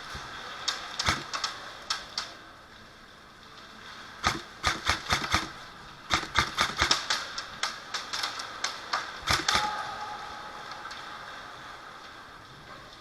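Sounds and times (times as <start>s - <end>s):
airsoft guns firing: 1.0s - 1.6s, 4.2s - 7.3s, 9.2s - 9.8s.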